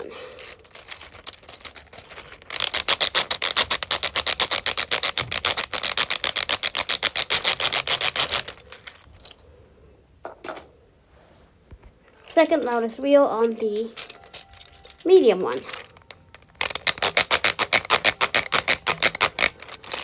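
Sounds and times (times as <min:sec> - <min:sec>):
fidget toy wheel clicking: 0:02.5 - 0:08.9, 0:12.5 - 0:20.0.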